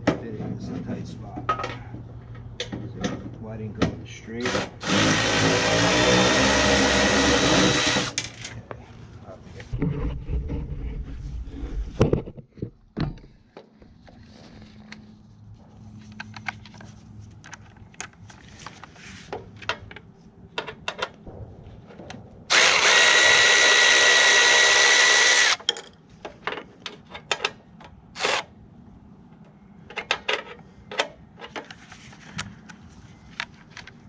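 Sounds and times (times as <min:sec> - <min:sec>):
cordless ratchet motor whining: 0:22.5 - 0:25.6.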